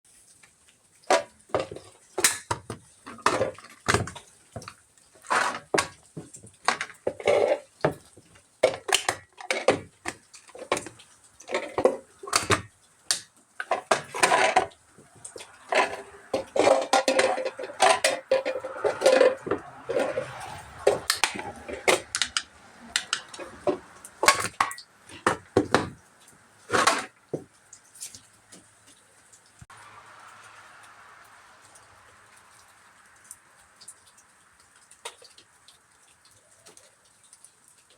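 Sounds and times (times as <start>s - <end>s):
tin cans being smashed: 1.1s - 8.0s, 8.6s - 20.3s, 20.9s - 26.0s, 26.7s - 27.2s.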